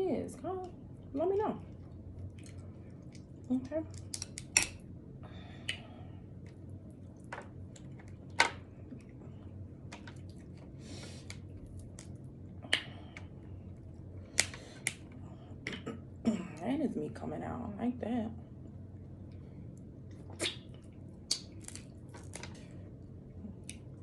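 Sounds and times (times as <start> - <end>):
crab shells cracking: 3.9 - 4.8
soft rustling and squishing: 19.2 - 24.0.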